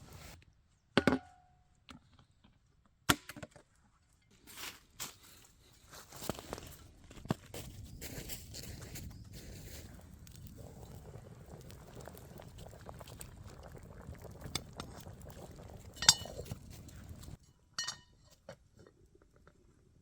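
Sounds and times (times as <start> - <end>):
low crackling noise: 6.1 - 17.4.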